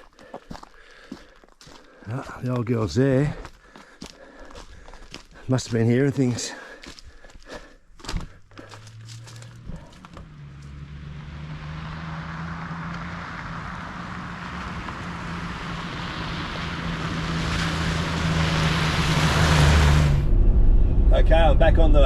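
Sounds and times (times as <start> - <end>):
road noise: 0.0 - 22.0
car engine starting and running: 8.0 - 22.0.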